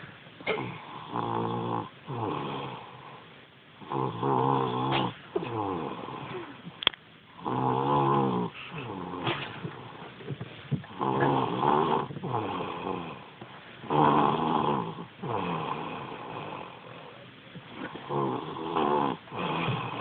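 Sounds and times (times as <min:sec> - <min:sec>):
child snoring: 0:00.5 - 0:03.2, 0:03.8 - 0:06.7, 0:07.4 - 0:10.0, 0:10.8 - 0:20.0.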